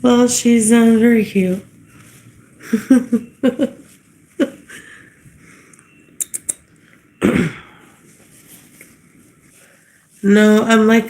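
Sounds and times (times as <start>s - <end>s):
person coughing: 7.2s - 7.9s.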